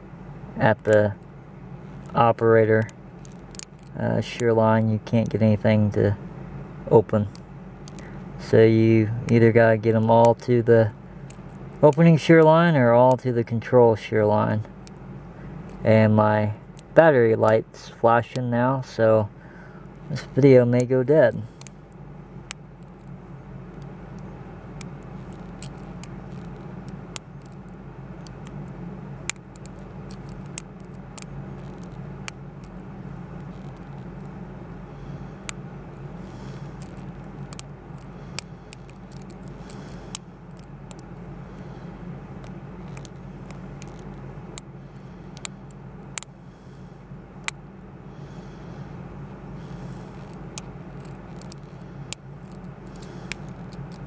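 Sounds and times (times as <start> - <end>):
steady low hum: 0.0 - 54.0
lock pick clicking and scraping: 24.2 - 28.6, 29.3 - 32.8, 36.8 - 41.0, 42.4 - 44.1, 50.0 - 54.0.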